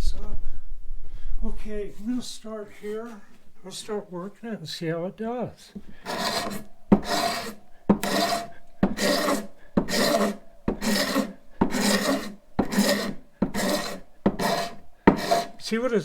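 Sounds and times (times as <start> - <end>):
wood scraper shaving a board: 5.8 - 15.8.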